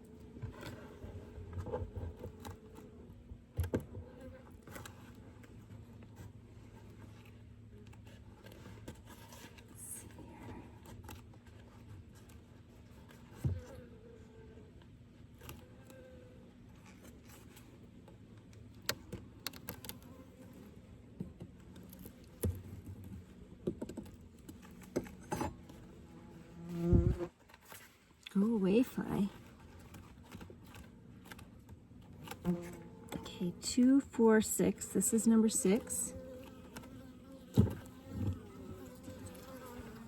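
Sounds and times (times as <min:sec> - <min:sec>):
honeybees humming: 0:32.3 - 0:40.0.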